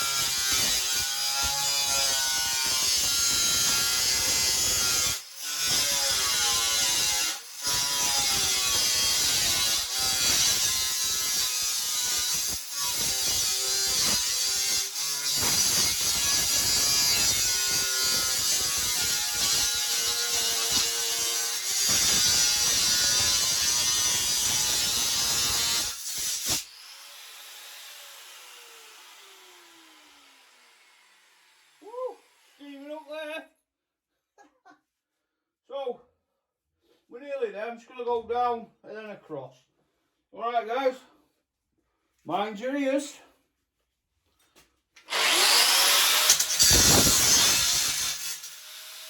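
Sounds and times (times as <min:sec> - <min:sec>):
electric cutter cutting metal: 0:00.0 - 0:32.6, 0:45.1 - 0:49.0.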